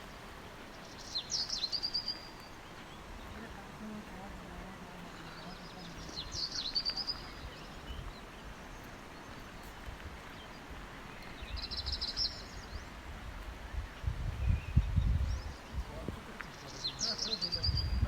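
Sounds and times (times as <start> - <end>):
songbird chirps and trills: 0.0 - 18.0.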